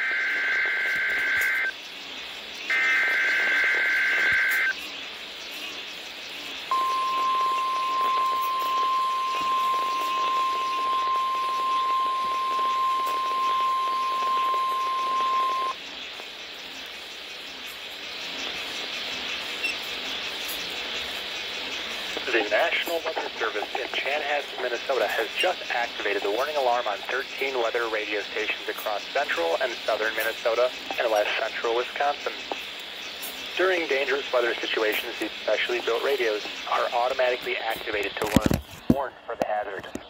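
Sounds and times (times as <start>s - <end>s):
buzzy two-tone data bursts: 0.0s - 1.8s, 2.7s - 4.9s, 6.4s - 15.8s
steady warning alarm tone: 0.0s - 1.8s, 2.7s - 4.9s, 6.4s - 17.0s
faint radio hiss: 0.0s - 40.0s.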